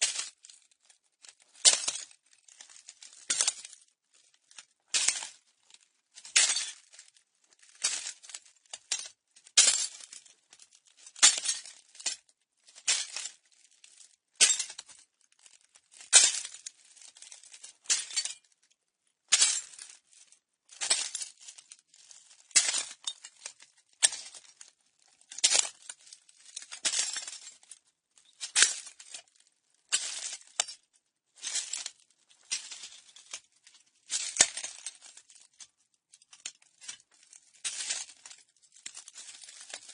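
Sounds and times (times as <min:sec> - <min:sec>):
footsteps crunching on broken glass: 0:01.3 - 0:03.8, 0:06.3 - 0:10.4, 0:11.2 - 0:12.2, 0:12.8 - 0:13.7, 0:14.4 - 0:15.0, 0:15.7 - 0:18.5, 0:20.8 - 0:30.8, 0:31.4 - 0:33.5, 0:34.1 - 0:35.8, 0:36.4 - 0:39.9.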